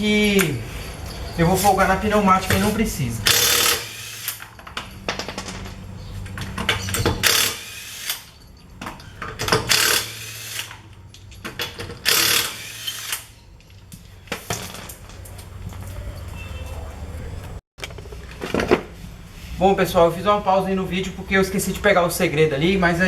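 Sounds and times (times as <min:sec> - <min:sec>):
pneumatic impact wrench hammering: 0:03.2 - 0:05.8, 0:06.4 - 0:13.4
small metallic clinks: 0:03.4 - 0:10.0.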